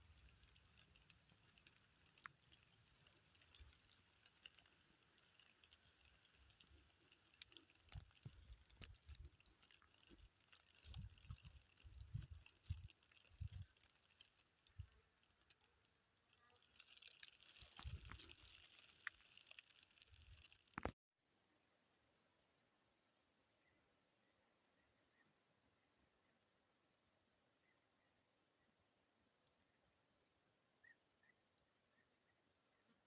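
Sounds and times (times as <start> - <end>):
soft high hiss: 0.0 - 20.8
small clicks: 0.0 - 21.0.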